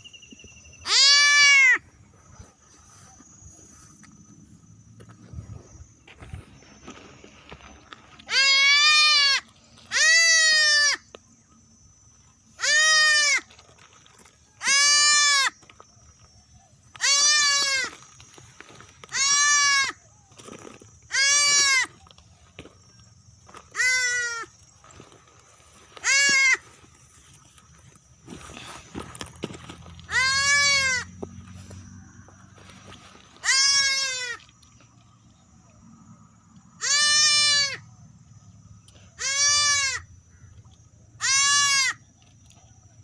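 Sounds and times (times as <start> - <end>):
goat kid bleating: 0.8 - 1.8, 8.2 - 11.0, 12.6 - 13.5, 14.6 - 15.5, 17.0 - 17.9, 19.1 - 20.0, 21.1 - 21.9, 23.7 - 24.5, 26.0 - 26.7, 30.0 - 31.1, 33.4 - 34.4, 36.8 - 37.8, 39.2 - 40.1, 41.2 - 42.0.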